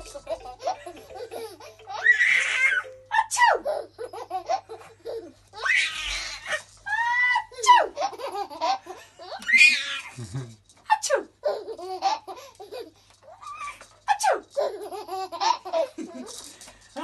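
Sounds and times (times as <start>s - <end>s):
high-pitched laughter: 6.9s - 10.5s.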